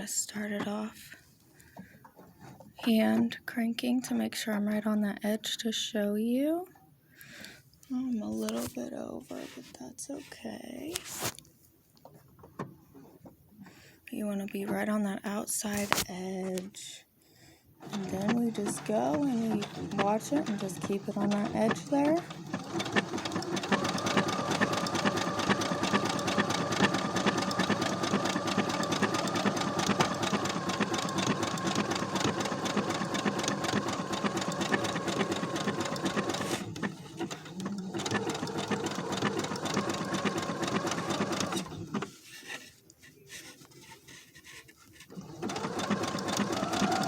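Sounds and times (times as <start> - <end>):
sewing machine motor whine: 17.8 - 42.2, 45.1 - 47.0
sewing machine needle clatter: 17.8 - 42.6, 43.4 - 47.0.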